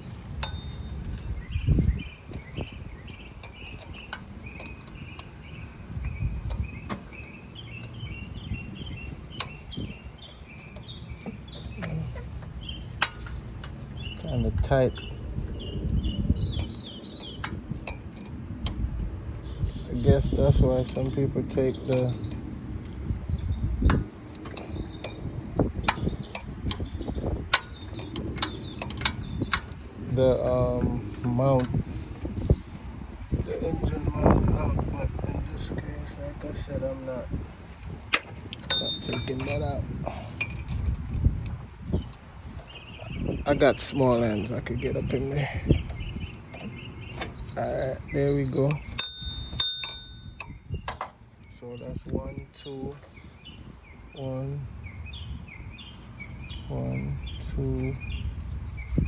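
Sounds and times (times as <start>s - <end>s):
metal clicks of hand tools: 10.7s - 14.3s, 21.9s - 22.4s, 27.5s - 29.9s, 37.8s - 42.2s, 48.6s - 51.1s
socket wrench clicking: 27.5s - 29.9s.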